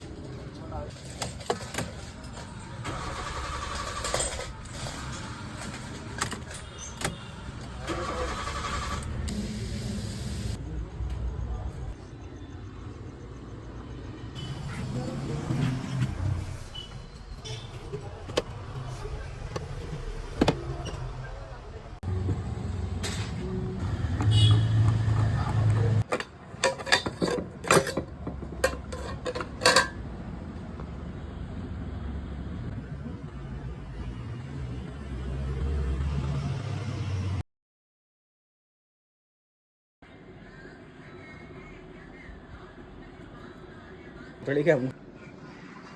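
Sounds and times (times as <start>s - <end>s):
engine cranking on starter: 2.8s - 5.8s, 7.7s - 9.7s.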